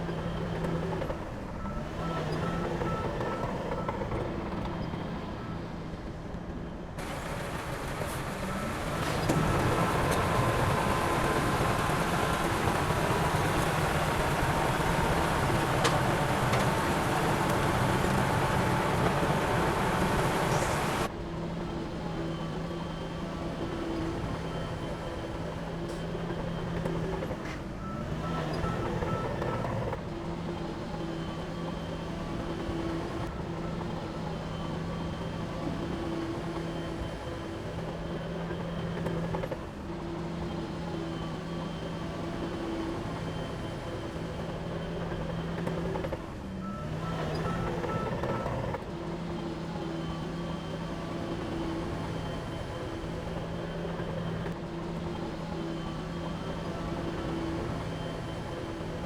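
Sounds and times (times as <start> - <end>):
heavy diesel machinery running: 0.0 - 59.0.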